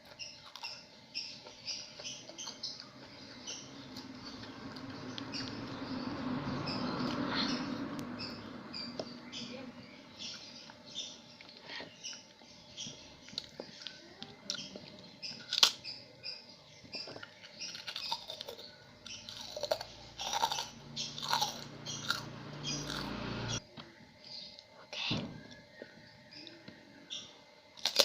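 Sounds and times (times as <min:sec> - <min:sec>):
wet chewing: 0:13.2 - 0:15.8, 0:16.9 - 0:23.2
crisp crunching bites: 0:15.4 - 0:15.8, 0:17.2 - 0:23.1, 0:27.8 - 0:28.0.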